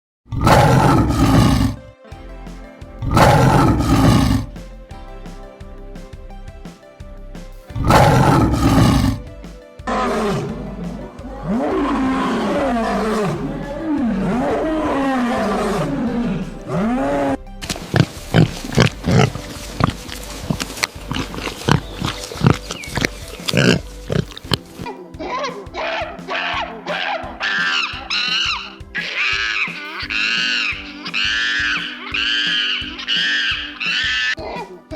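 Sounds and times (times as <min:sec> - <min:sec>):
animal grunting: 0:00.3 - 0:01.8, 0:03.0 - 0:04.6, 0:07.8 - 0:09.3, 0:09.9 - 0:34.9
tiger roaring: 0:00.3 - 0:01.8, 0:03.0 - 0:04.6, 0:07.8 - 0:09.3, 0:09.9 - 0:17.4
background music: 0:00.3 - 0:34.9.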